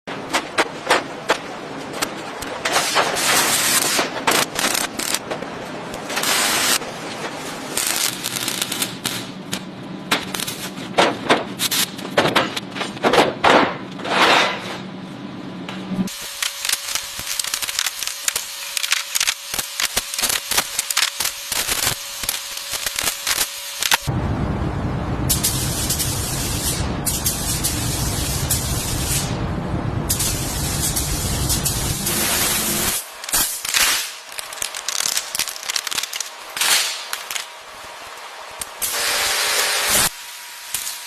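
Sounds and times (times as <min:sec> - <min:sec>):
steady high hum: 0:00.1 - 0:41.0
bursts of hiss: 0:30.1 - 0:37.2.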